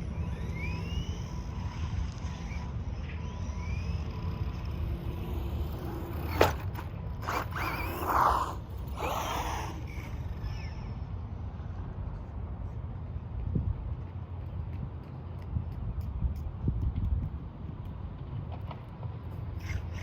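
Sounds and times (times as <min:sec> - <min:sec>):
electric motor whining: 0:00.0 - 0:10.9
scraping over dirt: 0:05.9 - 0:09.8
wind rumble on microphone: 0:07.2 - 0:20.0.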